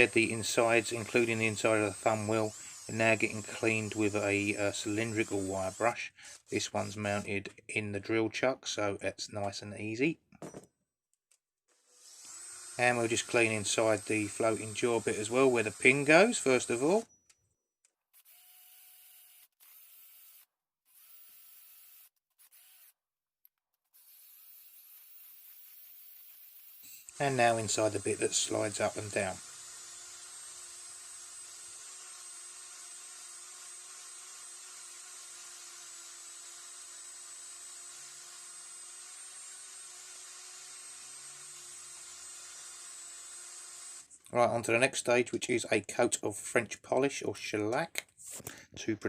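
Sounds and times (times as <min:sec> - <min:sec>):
drill whirring with wire brush: 0:00.0 - 0:07.4, 0:11.7 - 0:17.1, 0:18.1 - 0:23.0, 0:23.8 - 0:44.2.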